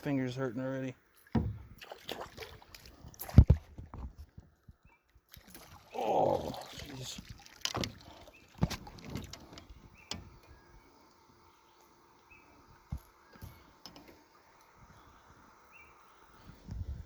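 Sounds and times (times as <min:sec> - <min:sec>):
faint handling clicks and knocks: 0:07.6 - 0:10.6, 0:12.8 - 0:14.8.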